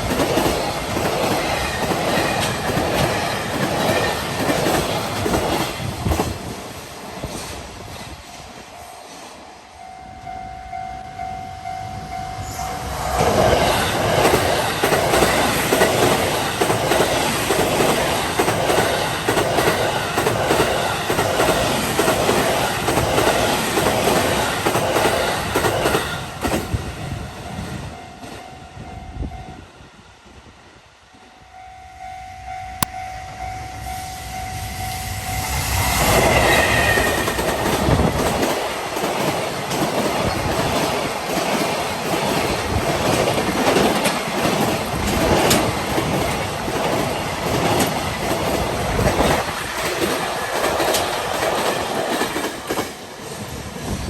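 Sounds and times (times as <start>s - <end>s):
train wheels clattering on rails: 0.0s - 8.6s, 13.1s - 28.5s, 35.4s - 54.0s
crossing warning bell: 8.7s - 13.1s, 27.3s - 30.0s, 31.2s - 36.3s.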